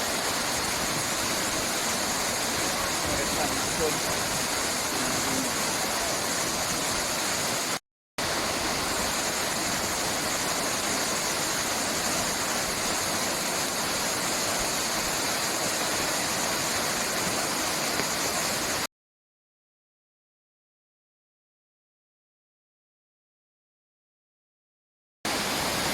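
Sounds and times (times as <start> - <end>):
waterfall rushing: 0.0 - 18.9, 25.3 - 25.9.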